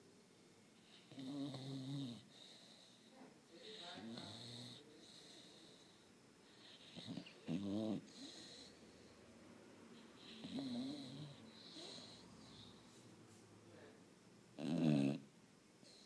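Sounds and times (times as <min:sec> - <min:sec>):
pet snoring: 0:00.8 - 0:09.1, 0:10.0 - 0:13.0, 0:14.6 - 0:16.0.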